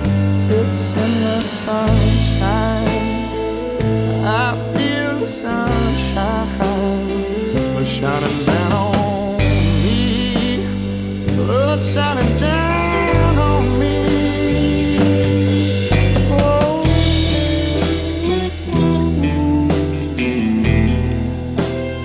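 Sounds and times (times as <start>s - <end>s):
pitch bending melody: 0.0s - 22.0s
rock blues band: 0.0s - 22.0s.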